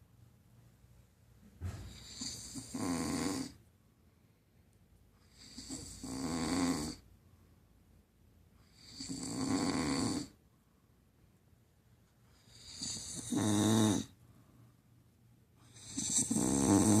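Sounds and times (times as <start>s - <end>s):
person snoring: 1.9s - 3.6s, 5.3s - 7.0s, 8.7s - 10.4s, 12.4s - 14.1s, 15.7s - 17.0s
quiet breathing: 6.9s - 9.4s, 12.0s - 17.0s.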